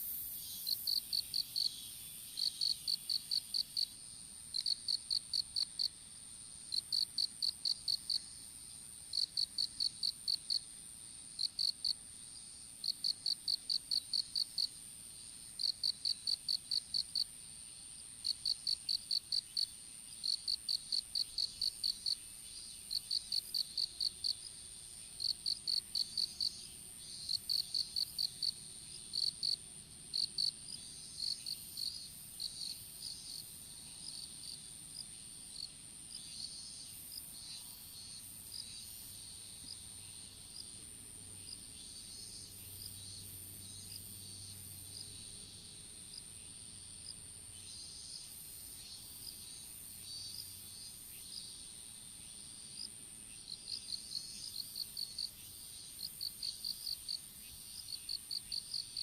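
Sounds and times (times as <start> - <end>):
insect chirping in bursts: 0.0 - 3.9, 12.8 - 24.5.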